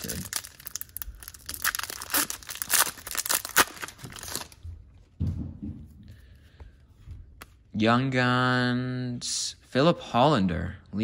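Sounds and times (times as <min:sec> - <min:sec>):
foil wrapper tearing and crinkling: 0:00.0 - 0:04.6.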